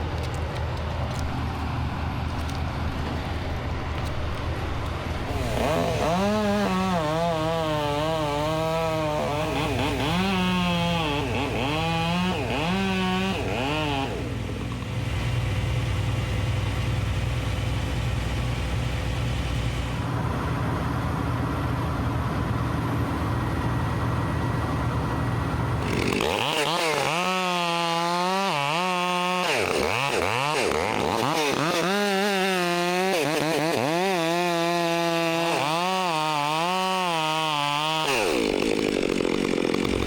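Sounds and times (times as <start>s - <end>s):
steady engine drone: 0.0s - 26.2s, 38.3s - 40.0s
chainsaw cutting into wood: 5.2s - 20.0s, 25.8s - 40.0s.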